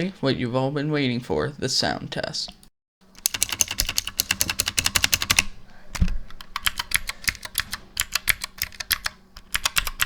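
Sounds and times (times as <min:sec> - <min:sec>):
clicky mechanical keyboard typing: 0:03.2 - 0:10.0.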